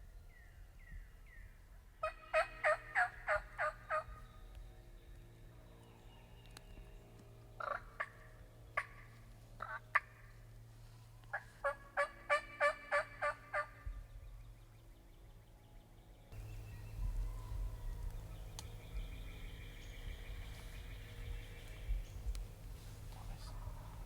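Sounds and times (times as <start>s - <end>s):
turkey calling: 2.0s - 4.1s, 11.3s - 13.8s, 16.4s - 24.0s.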